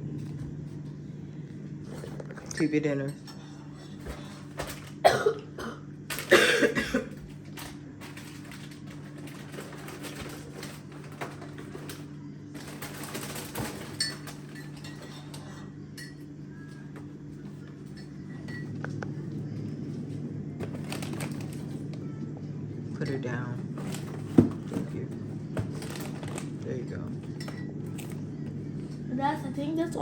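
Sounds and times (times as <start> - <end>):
steady low hum: 0.0 - 30.0
plastic rustling: 7.2 - 15.4, 20.6 - 21.9, 23.6 - 28.2.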